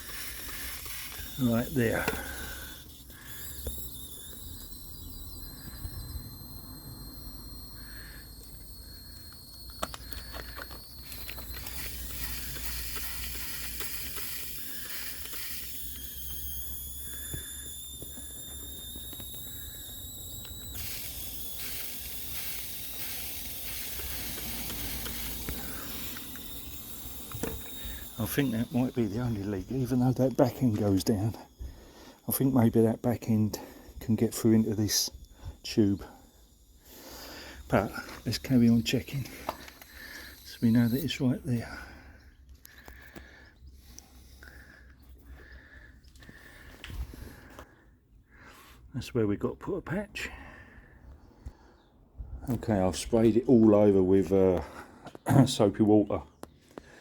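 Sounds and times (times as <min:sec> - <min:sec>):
air hissing through soapy water: 0:00.0 - 0:35.4
thin high squeal: 0:00.0 - 0:42.3.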